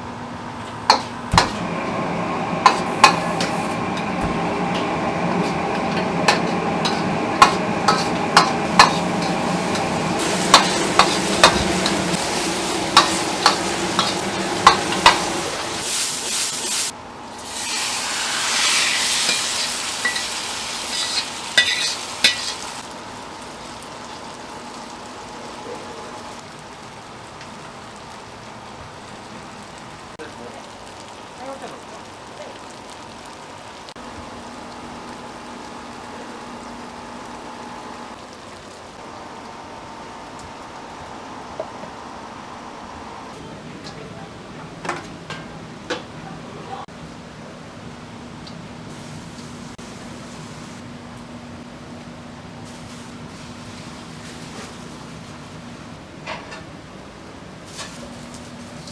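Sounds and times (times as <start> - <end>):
food sizzling in a pan: 0.9 - 38.8, 48.9 - 50.8, 52.6 - 55.9, 57.6 - 58.9
metal utensil clacking on pan: 21.0 - 22.6.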